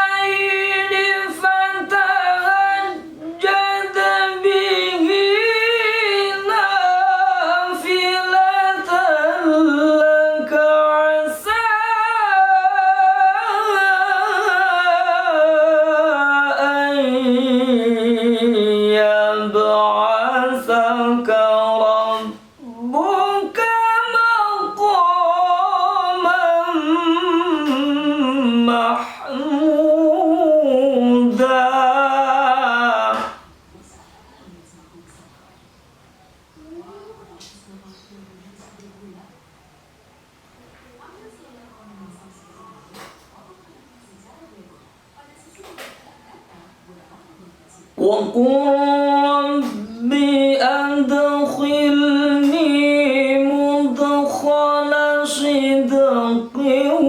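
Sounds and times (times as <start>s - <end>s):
man chanting melodically: 0.0s - 33.5s, 48.0s - 57.0s.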